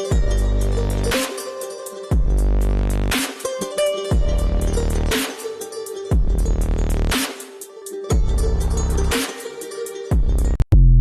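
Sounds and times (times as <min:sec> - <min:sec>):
dubstep music with heavy bass drop: 0:00.0 - 0:11.0.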